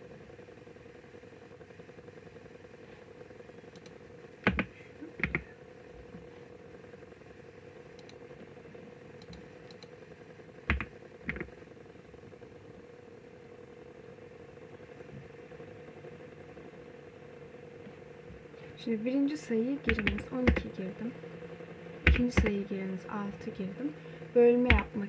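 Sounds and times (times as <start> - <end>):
steady low hum: 0.0 - 25.0
keyboard key clicks: 4.5 - 5.4, 10.7 - 11.5.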